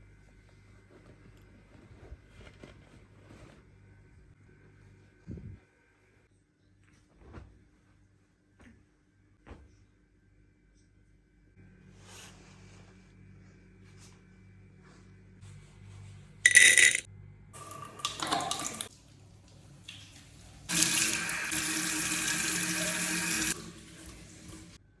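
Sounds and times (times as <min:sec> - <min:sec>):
tap water running into sink: 0:17.6 - 0:24.8.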